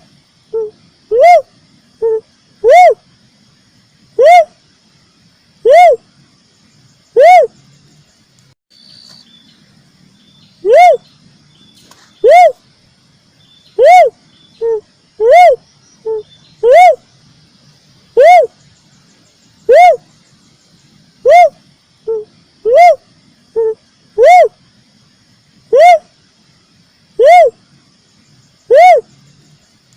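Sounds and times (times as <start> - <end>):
dove hooting call: 0.0 - 3.1, 4.2 - 4.6, 5.6 - 6.1, 7.1 - 7.6, 10.6 - 11.1, 12.2 - 12.6, 13.8 - 17.0, 18.1 - 18.6, 19.6 - 20.1, 21.2 - 24.6, 25.7 - 26.1, 27.2 - 27.6, 28.7 - 29.1.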